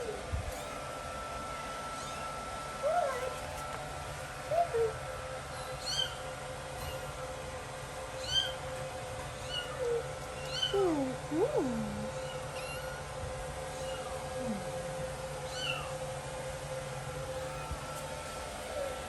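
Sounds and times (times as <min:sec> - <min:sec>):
cat meowing: 0:12.1 - 0:13.1, 0:13.7 - 0:14.6, 0:15.5 - 0:15.9, 0:17.4 - 0:17.9.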